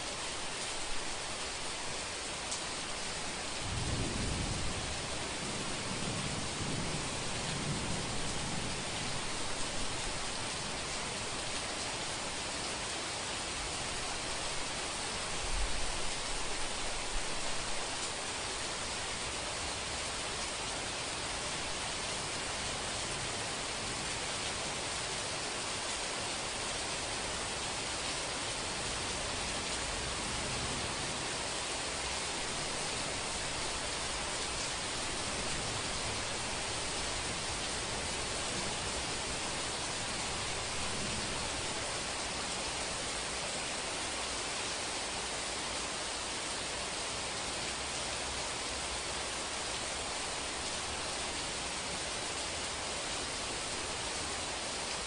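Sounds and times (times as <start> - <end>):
heavy rain hissing: 0.0 - 55.0.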